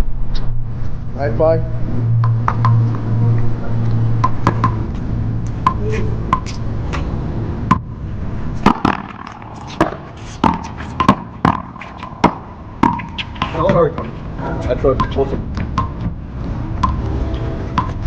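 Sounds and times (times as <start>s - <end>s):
low hum: 0.0s - 18.0s
ball hitting wall: 4.2s - 4.8s, 8.6s - 14.1s
paddles smacking ball: 8.6s - 14.1s.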